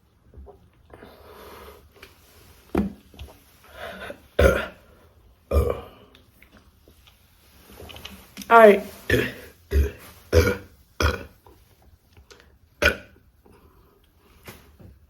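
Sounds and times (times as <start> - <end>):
woman burping: 4.4 - 4.8, 5.5 - 6.0, 9.1 - 11.4, 12.8 - 13.2.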